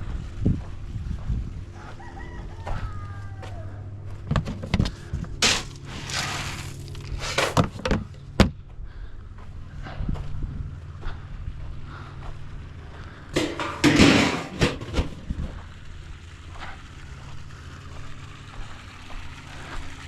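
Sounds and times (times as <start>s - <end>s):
steady low hum: 0.0s - 20.0s
rooster crowing: 1.7s - 4.1s
chickens clucking: 1.8s - 4.0s.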